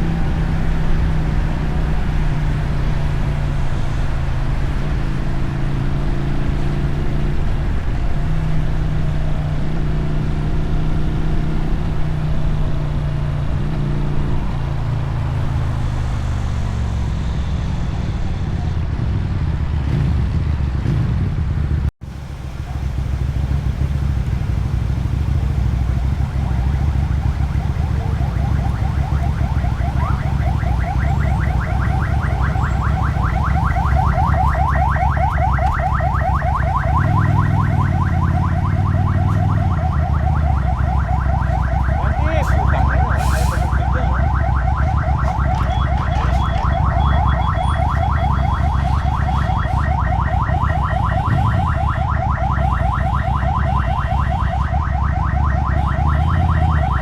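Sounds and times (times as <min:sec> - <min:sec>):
motorcycle engine rumble: 0:00.0 - 0:57.0
car alarm warbling: 0:22.7 - 0:57.0.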